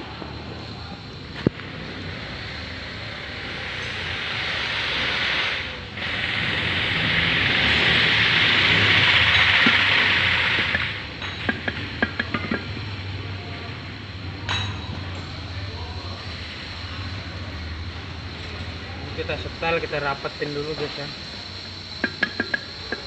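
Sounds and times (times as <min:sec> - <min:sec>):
long hissing jet: 0:00.0 - 0:14.4, 0:15.0 - 0:23.0
light metallic clinks: 0:14.4 - 0:15.5.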